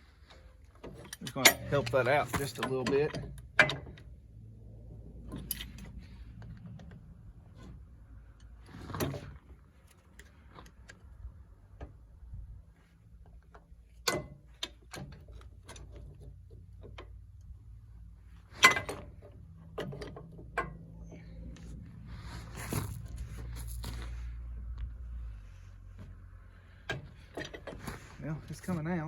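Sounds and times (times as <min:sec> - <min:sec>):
metal tools clicking and knocking: 0:00.8 - 0:04.1
sharp metal clanks: 0:01.1 - 0:04.0.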